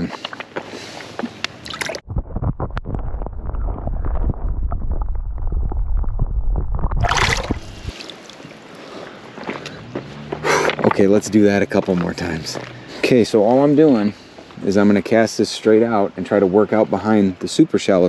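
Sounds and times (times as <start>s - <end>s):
water sloshing and gurgling: 1.6s - 2.0s, 3.2s - 8.7s
water splash: 6.7s - 8.4s.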